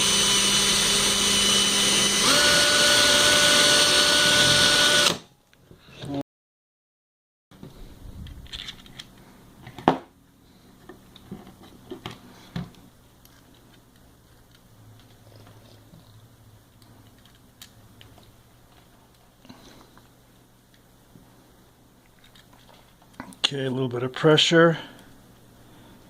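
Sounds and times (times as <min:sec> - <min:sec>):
small parts clicking and knocking: 0:16.8 - 0:19.2.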